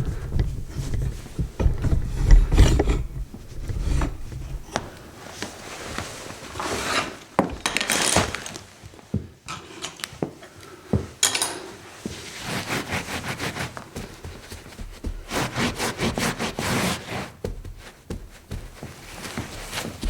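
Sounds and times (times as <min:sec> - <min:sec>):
knock and clatter: 0:00.0 - 0:05.0
rubbing strokes on hard surface: 0:12.0 - 0:17.6.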